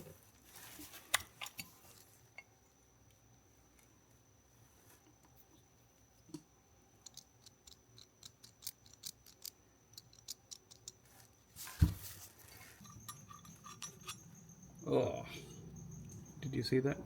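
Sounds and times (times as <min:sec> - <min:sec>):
thump: 0:11.7 - 0:12.1
hand tools clicking on metal parts: 0:12.8 - 0:14.4.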